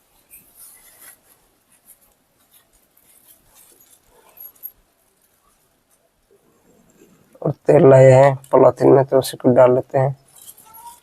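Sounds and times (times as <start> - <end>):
hands scratching and rustling: 0.0 - 7.4.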